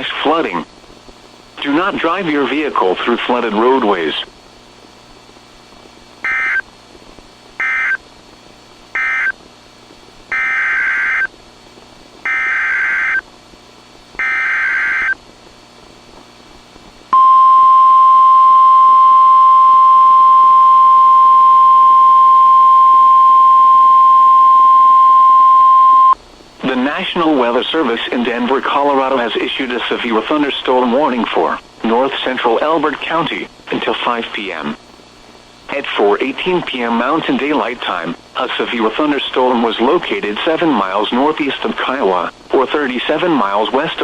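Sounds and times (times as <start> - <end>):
steady warning alarm tone: 6.2 - 6.6, 7.6 - 8.0, 8.9 - 9.4, 10.3 - 11.3, 12.3 - 13.2, 14.2 - 15.2, 17.2 - 26.2.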